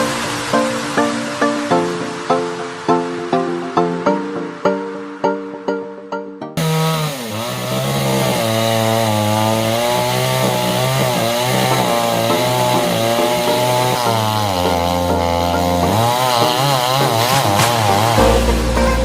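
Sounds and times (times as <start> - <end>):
plucked-string background music: 0.0 - 19.0
chainsaw running at high revs: 6.6 - 18.4.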